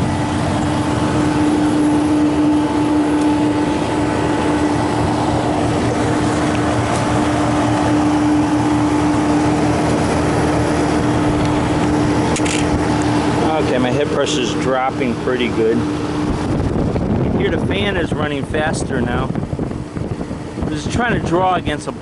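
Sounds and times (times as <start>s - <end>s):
condensing unit hum: 0.0s - 22.0s.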